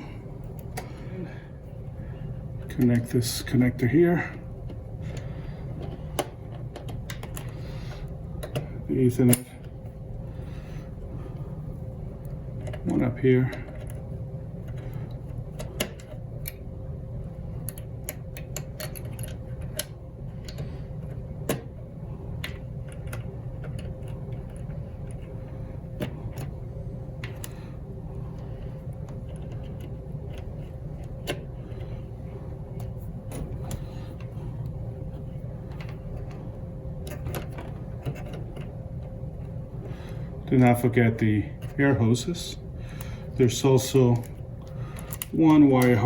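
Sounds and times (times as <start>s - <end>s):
low hum: 0.0s - 46.0s
cable connectors clicking: 43.9s - 46.0s.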